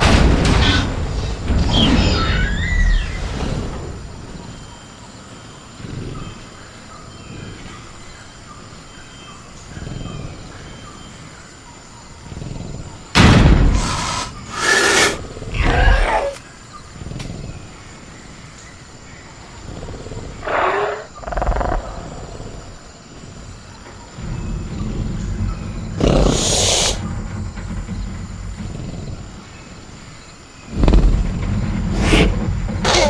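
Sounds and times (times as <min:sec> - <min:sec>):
high cricket chirr: 0:00.0 - 0:33.0
dinosaur growls and roars: 0:05.7 - 0:06.6, 0:12.2 - 0:16.4, 0:19.5 - 0:23.5, 0:24.2 - 0:30.1, 0:30.7 - 0:33.0.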